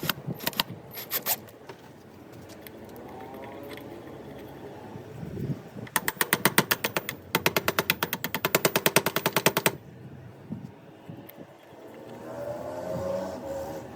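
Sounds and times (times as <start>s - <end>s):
rapid mechanical clicking: 5.9s - 9.8s.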